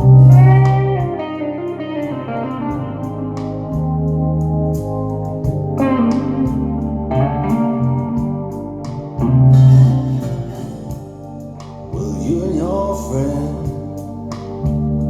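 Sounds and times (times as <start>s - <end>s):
guitar: 0.0s - 15.0s
person singing: 11.9s - 14.0s.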